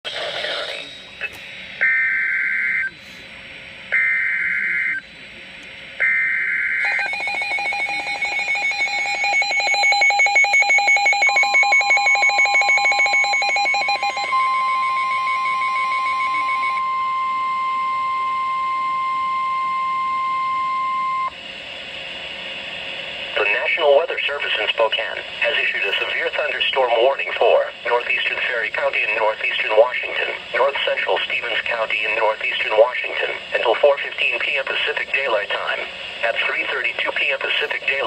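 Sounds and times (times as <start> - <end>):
steady warning alarm tone: 0.1 - 38.0
fast pulsing alarm beep: 1.8 - 2.9, 3.9 - 5.1, 6.0 - 21.4.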